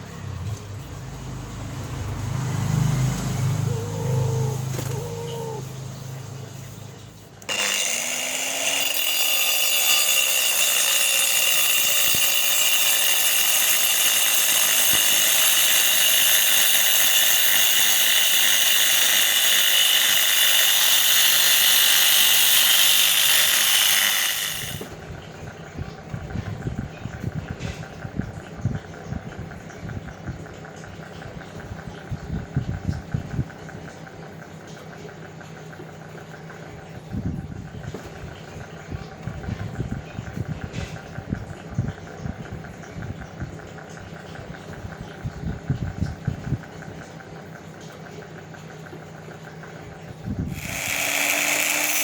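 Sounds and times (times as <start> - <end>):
handling and rumbling noises: 0.0 - 7.6, 24.8 - 50.8
power tool whining: 2.6 - 5.8, 7.4 - 25.0, 50.3 - 52.0.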